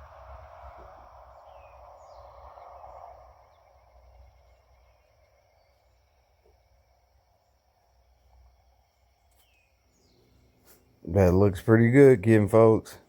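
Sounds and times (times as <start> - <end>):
low rumble: 0.0 - 5.1
bird chirps: 1.3 - 6.6, 8.1 - 10.8.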